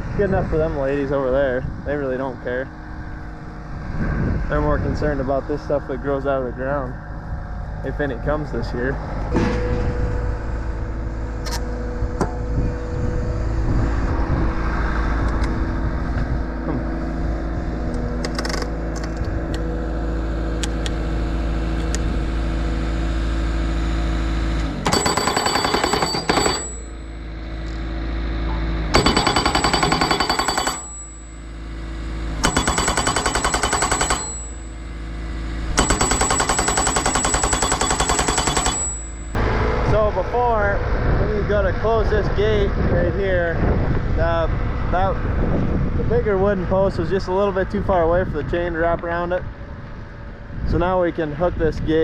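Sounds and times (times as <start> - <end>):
engine running steadily: 0.0 - 52.0
post pounder hammering: 24.9 - 27.0, 29.0 - 31.3, 32.4 - 34.8, 35.8 - 39.4.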